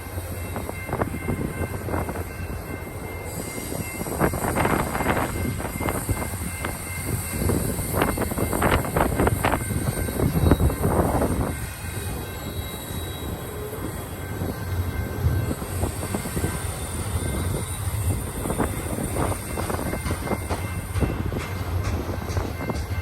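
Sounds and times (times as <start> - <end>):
train wheels rumbling on rail: 0.0 - 23.0
high steady squeal: 3.2 - 20.6.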